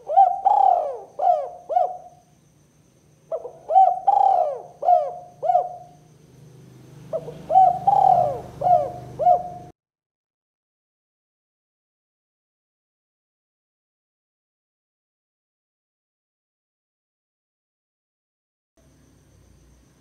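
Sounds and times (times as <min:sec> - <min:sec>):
dove cooing: 0:00.0 - 0:02.2, 0:03.3 - 0:06.1, 0:07.0 - 0:09.7.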